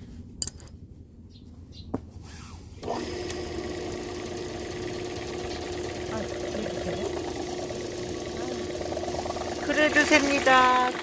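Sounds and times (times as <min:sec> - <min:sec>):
sprayer pump humming: 0:02.8 - 0:11.0.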